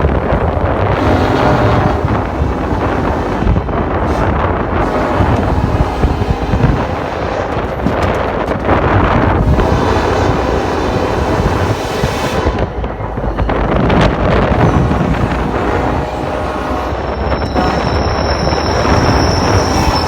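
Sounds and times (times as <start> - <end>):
freight train rumbling: 0.0 - 20.0
wind buffeting microphone: 0.0 - 20.0
train wheel squeal: 4.1 - 8.5, 9.4 - 20.0.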